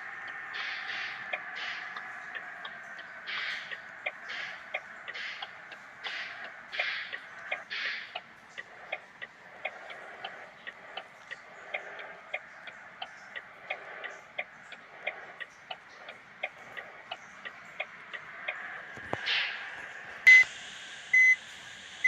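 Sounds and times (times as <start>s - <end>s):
mechanical ticking: 0.0s - 20.5s
faint hiss: 19.2s - 22.0s.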